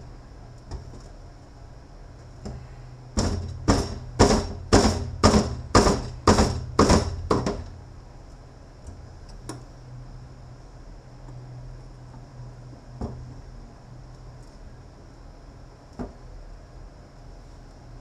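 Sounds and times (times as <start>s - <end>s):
hammer striking metal part: 3.2s - 7.7s.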